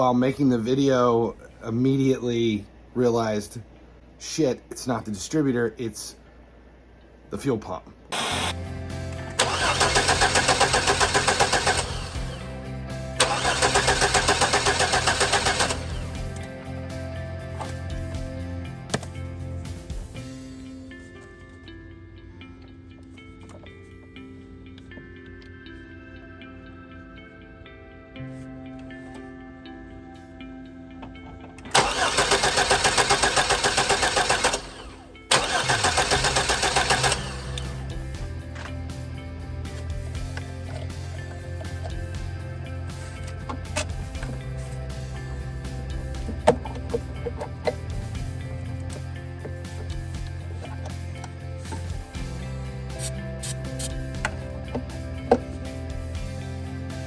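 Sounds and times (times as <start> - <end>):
starter cranking engine: 9.4 - 12.5, 13.2 - 16.4, 31.7 - 37.9, 46.0 - 51.0.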